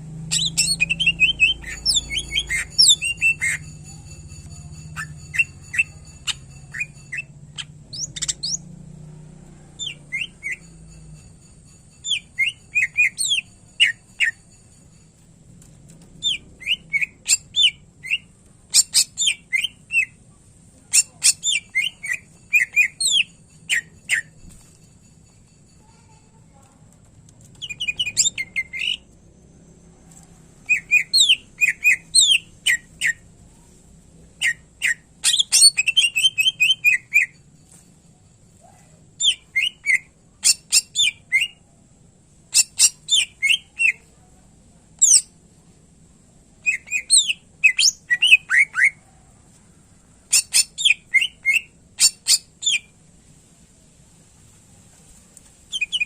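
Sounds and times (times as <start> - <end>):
faint high-pitched tone: 0.0 - 16.6
bird singing chirps and whistles: 0.3 - 3.8, 4.9 - 8.7, 9.8 - 10.7, 12.0 - 14.4, 16.2 - 20.2, 21.0 - 24.3, 27.6 - 29.0, 30.7 - 33.2, 34.4 - 37.4, 39.2 - 41.6, 42.5 - 44.0, 46.6 - 49.0, 50.3 - 52.9, 55.7 - 56.0.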